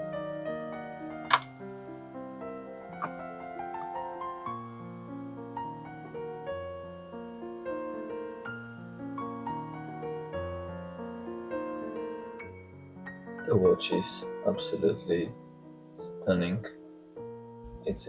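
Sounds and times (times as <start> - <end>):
gentle piano music: 0.0 - 18.0.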